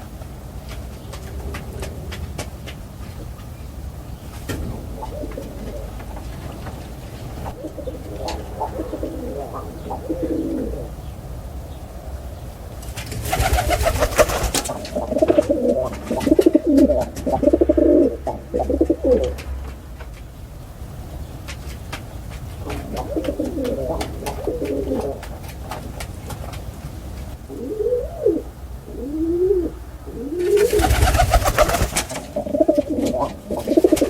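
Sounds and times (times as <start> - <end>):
pigeon cooing: 4.5 - 6.7, 7.3 - 11.1, 13.3 - 19.6, 22.5 - 26.1, 27.3 - 34.0.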